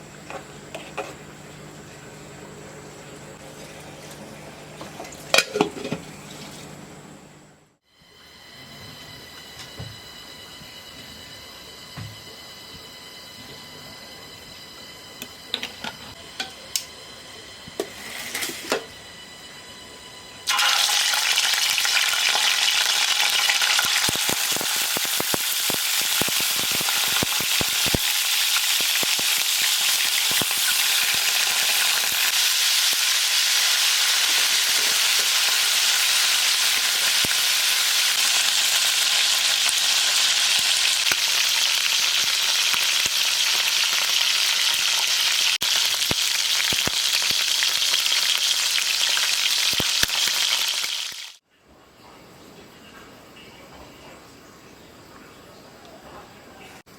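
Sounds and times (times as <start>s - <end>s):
food sizzling in hot oil: 17.8s - 18.8s, 20.5s - 51.4s.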